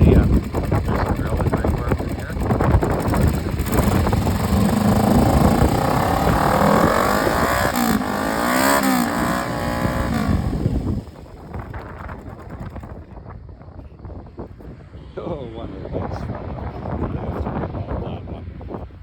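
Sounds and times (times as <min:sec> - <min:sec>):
motorcycle engine revving: 0:00.0 - 0:12.8.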